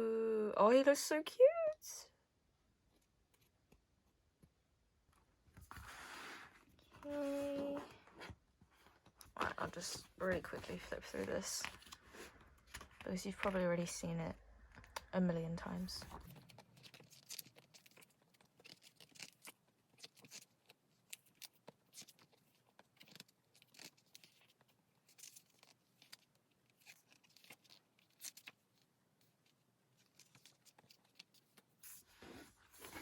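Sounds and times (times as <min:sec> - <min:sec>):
pages flipping: 0:05.6 - 0:13.6, 0:15.7 - 0:28.8, 0:29.4 - 0:33.0.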